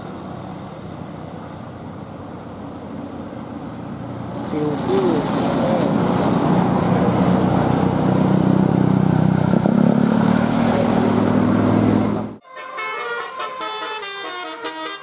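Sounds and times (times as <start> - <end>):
bus engine running: 0.0 - 12.4
musical horn tune: 12.4 - 15.0.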